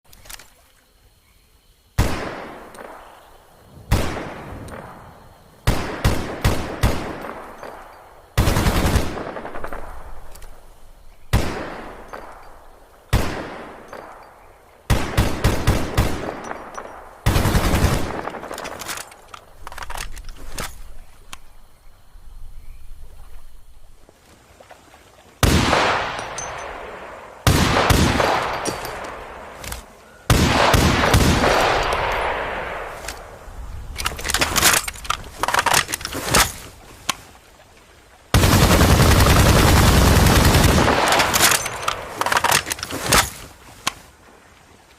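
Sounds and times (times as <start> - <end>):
rifle gunshots and bursts: 2.0 - 3.3, 3.9 - 5.0, 5.6 - 10.2, 11.3 - 12.5, 13.1 - 14.2, 14.9 - 19.8, 25.4 - 33.0, 38.4 - 43.3.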